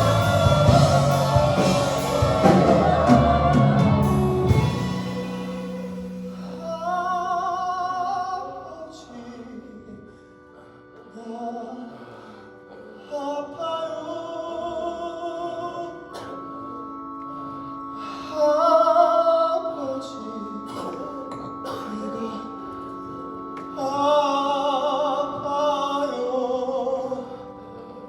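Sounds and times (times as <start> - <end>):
sustained instrumental chords: 0.0 - 8.8
person singing with vibrato: 0.0 - 16.9, 18.0 - 28.0.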